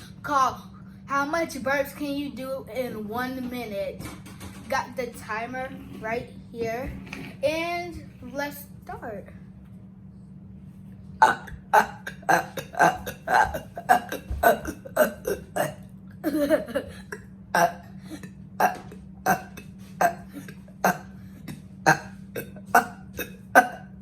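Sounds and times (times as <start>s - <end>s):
person burping: 11.2s - 24.0s.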